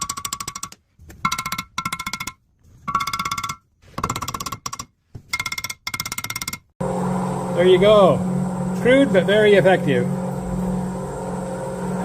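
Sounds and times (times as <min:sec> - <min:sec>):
rapid metallic hammering: 0:00.0 - 0:06.7.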